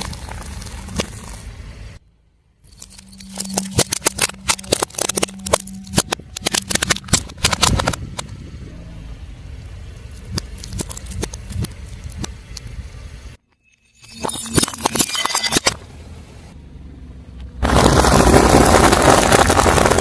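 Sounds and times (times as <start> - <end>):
tyre crushing crunchy objects: 0.0 - 1.6, 10.1 - 12.4, 17.6 - 20.0
low engine hum: 0.0 - 13.4, 15.8 - 19.9.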